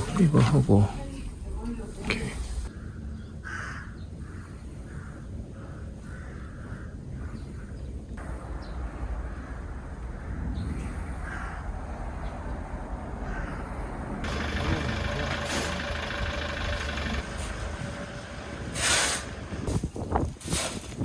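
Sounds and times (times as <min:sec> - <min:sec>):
vehicle engine rumbling: 0:08.2 - 0:21.0
hiss: 0:18.7 - 0:19.5.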